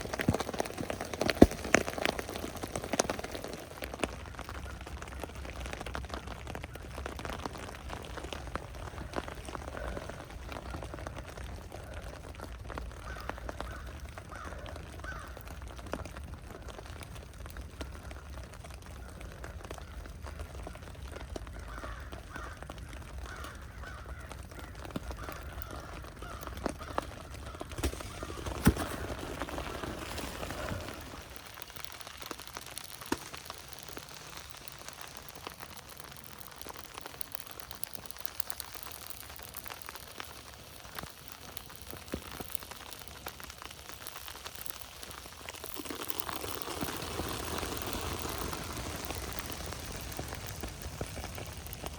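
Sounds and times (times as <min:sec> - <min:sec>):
crow cawing: 0:09.0 - 0:16.0, 0:21.4 - 0:29.6
outdoor hiss: 0:40.1 - 0:51.9.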